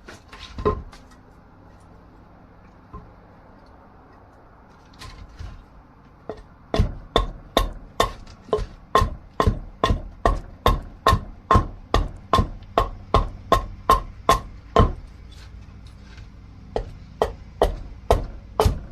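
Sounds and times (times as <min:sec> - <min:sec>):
tool striking wood: 0:00.5 - 0:01.0, 0:06.3 - 0:15.1, 0:16.8 - 0:18.9.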